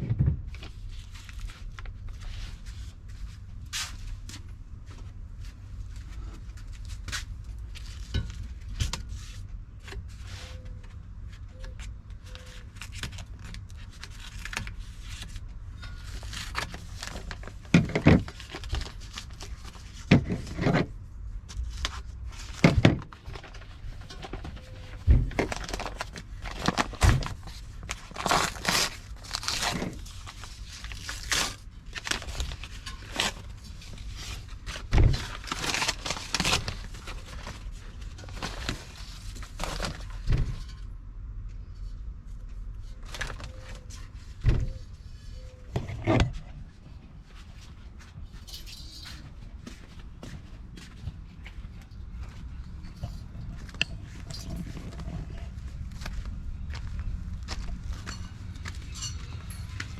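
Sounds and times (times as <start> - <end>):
packing material crinkling: 12.2 - 20.6, 21.6 - 40.3.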